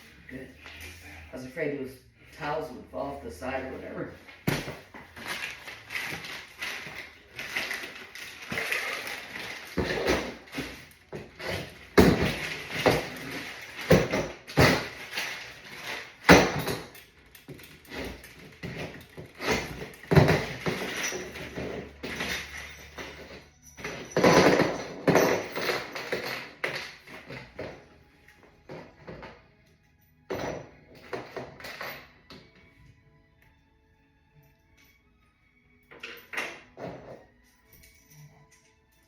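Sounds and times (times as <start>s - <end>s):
furniture panels knocking and clattering: 4.4s - 5.5s, 6.2s - 27.8s.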